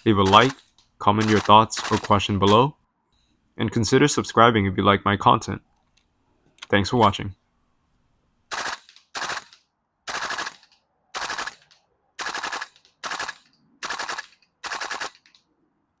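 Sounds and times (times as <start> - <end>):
airsoft rifle full-auto bursts: 0.0 - 2.7, 8.5 - 15.4.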